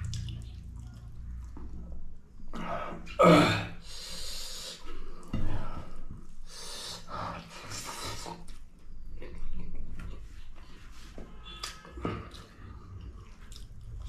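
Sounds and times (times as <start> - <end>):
man breathing hard while eating: 3.8 - 8.3.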